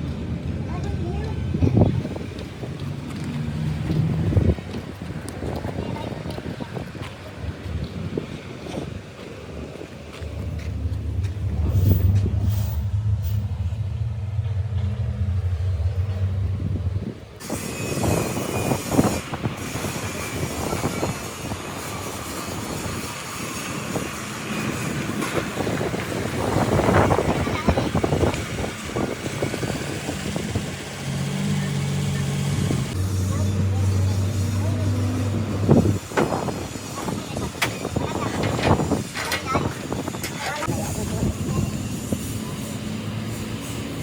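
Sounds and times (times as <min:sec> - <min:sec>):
heavy machine engine running: 0:08.6 - 0:44.0
mechanical clatter with knocks: 0:37.5 - 0:40.7.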